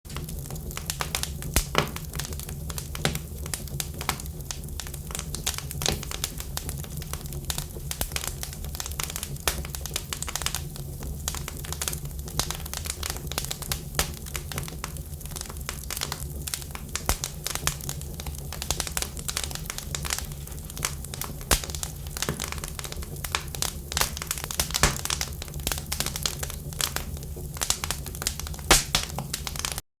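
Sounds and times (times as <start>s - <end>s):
low rumble of flames: 0.1s - 29.8s
wood fire crackling: 0.1s - 29.8s.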